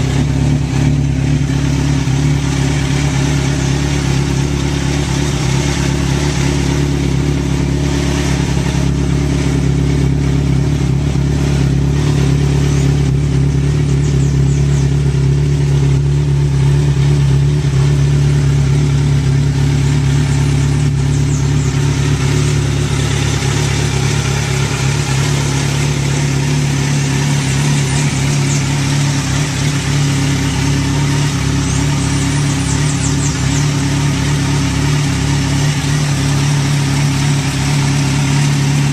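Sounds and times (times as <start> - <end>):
motorcycle engine idling: 0.0 - 38.9.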